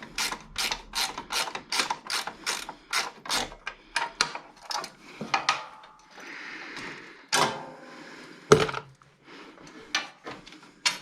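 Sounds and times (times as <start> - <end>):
socket ratchet clicking: 0.1 - 3.6.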